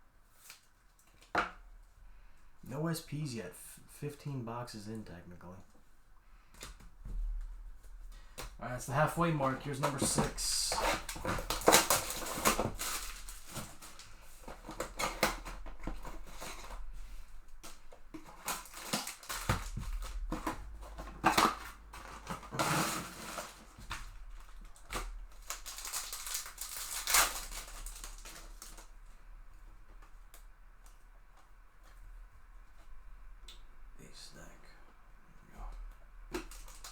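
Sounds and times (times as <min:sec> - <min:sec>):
card wrapper crinkling and tearing: 0:08.8 - 0:16.8, 0:17.6 - 0:28.9, 0:36.3 - 0:36.9.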